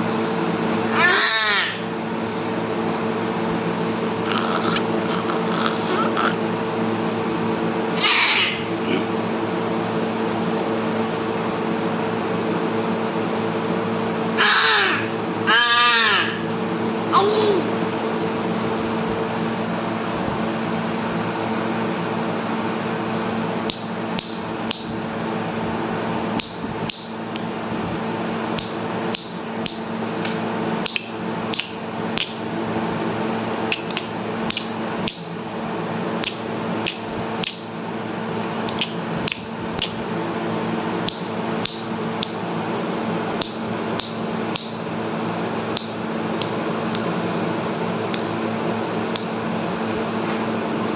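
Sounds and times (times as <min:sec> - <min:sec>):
steady mechanical hum: 0:00.0 - 0:50.9
sharp irregular clicks: 0:38.7 - 0:40.0.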